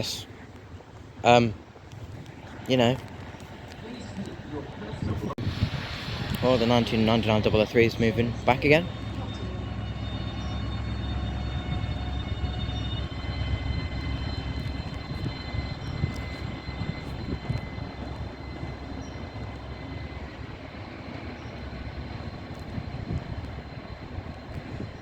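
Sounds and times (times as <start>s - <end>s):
locomotive low drone: 0.0s - 25.0s
high whining tones: 2.7s - 25.0s.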